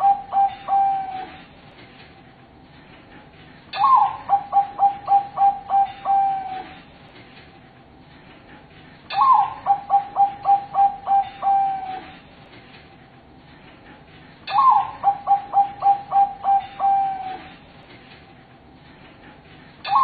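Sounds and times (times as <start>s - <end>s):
dove cooing: 0.0s - 1.4s, 3.8s - 6.8s, 9.2s - 12.1s, 14.5s - 17.5s.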